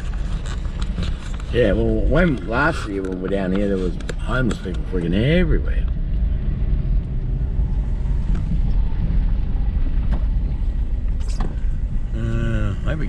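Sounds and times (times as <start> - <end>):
car engine and road noise: 0.0 - 13.0.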